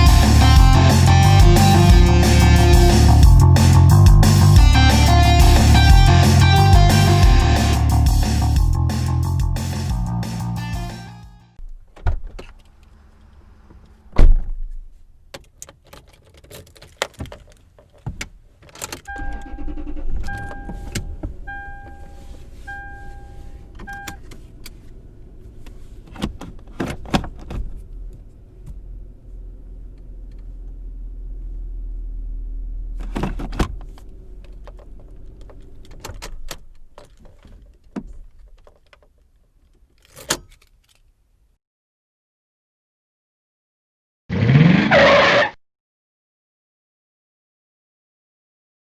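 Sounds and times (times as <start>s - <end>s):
car engine running: 0.0s - 10.6s
dashboard warning chime beeping: 19.1s - 24.2s.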